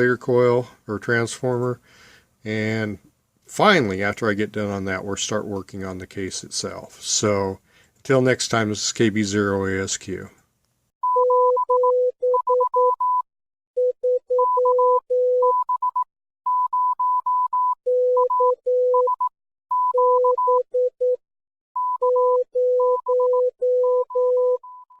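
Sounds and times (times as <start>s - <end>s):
morse code beeps: 11.0s - 13.2s, 13.8s - 21.2s, 21.8s - 25.0s.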